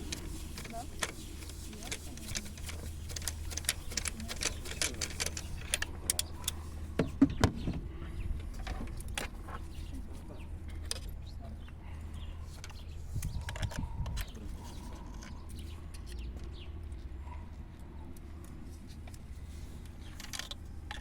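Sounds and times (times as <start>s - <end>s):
metallic clicks and clinks: 0.0s - 6.7s
steady low hum: 0.0s - 21.0s.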